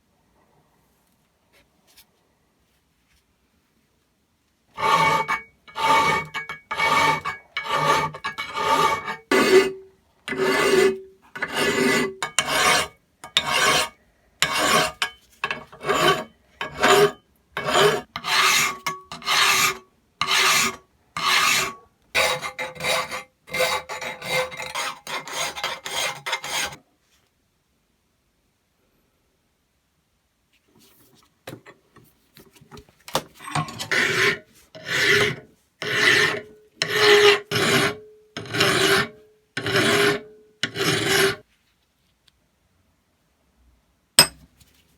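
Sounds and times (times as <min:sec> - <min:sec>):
hand file rasping on metal: 0:04.8 - 0:26.8, 0:33.5 - 0:41.4.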